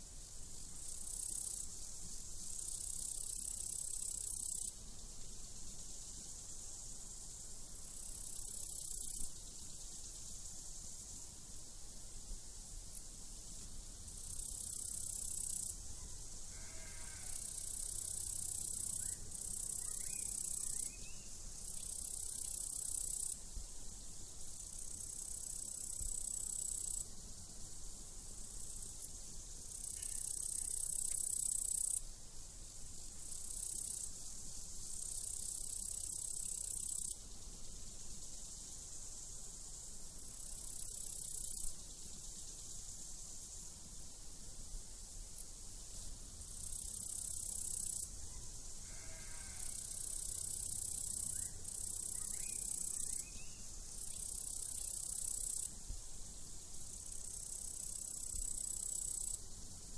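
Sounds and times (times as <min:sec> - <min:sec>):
crickets chirring: 0:00.1 - 0:59.9
sheep bleating faintly: 0:16.5 - 0:17.4, 0:48.8 - 0:49.8.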